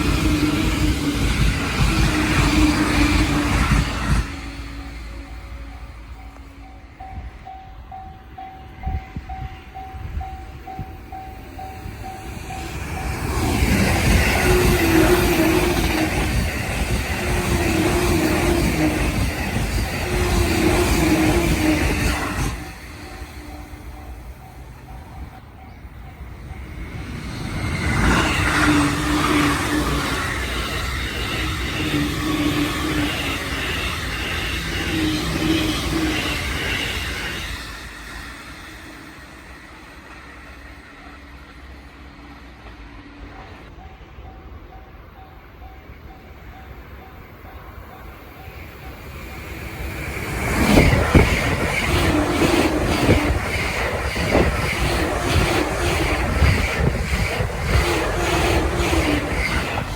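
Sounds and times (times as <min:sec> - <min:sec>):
crossing warning bell ringing: 0:00.0 - 0:41.8
train noise: 0:00.0 - 0:59.9
level crossing warning bell: 0:04.1 - 0:13.3.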